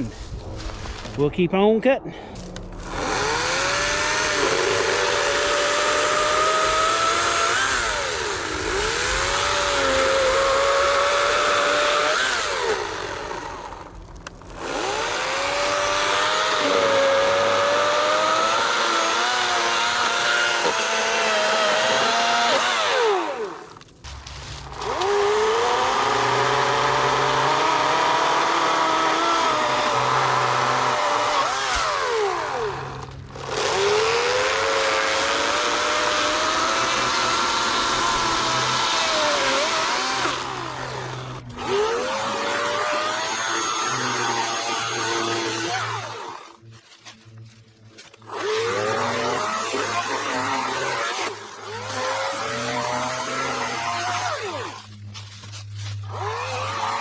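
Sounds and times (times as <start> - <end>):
electric chainsaw cutting log: 2.8 - 46.7, 48.0 - 57.0.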